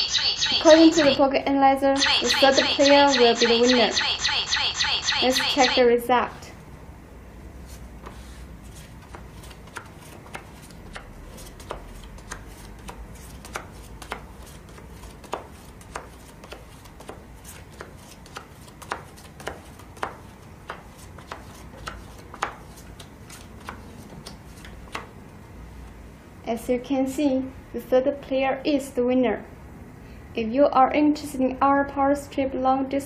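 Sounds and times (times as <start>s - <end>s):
playing cards laid on a table: 7.6s - 25.1s.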